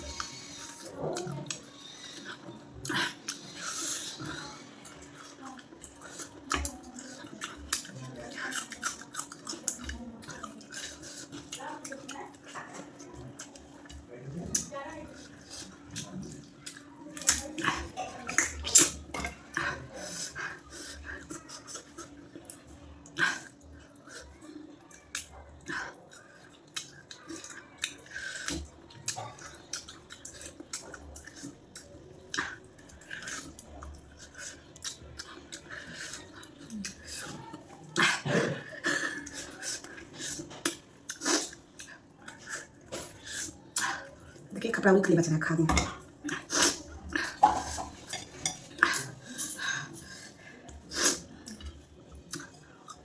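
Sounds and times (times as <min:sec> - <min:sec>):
crunchy chewing: 0:00.0 - 0:44.5, 0:45.9 - 0:53.0
wet chewing and lip smacks: 0:50.7 - 0:53.0.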